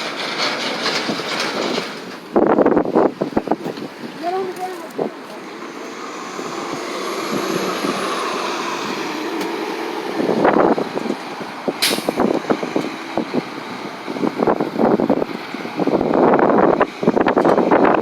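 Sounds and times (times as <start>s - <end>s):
bus engine drone: 0.0s - 18.0s
wind on microphone: 2.3s - 18.0s
sharp hiss of air: 11.8s - 12.3s.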